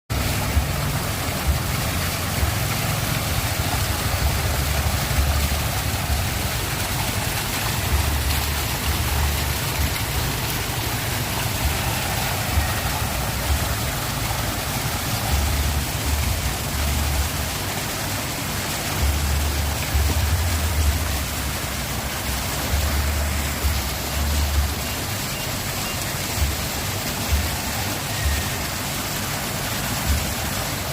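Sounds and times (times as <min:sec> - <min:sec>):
low rumbles: 0:00.1 - 0:24.8
waterfall rushing: 0:00.1 - 0:30.9.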